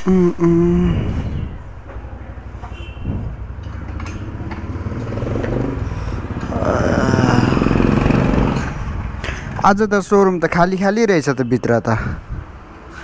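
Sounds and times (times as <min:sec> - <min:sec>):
motorcycle engine running: 0:03.6 - 0:09.2.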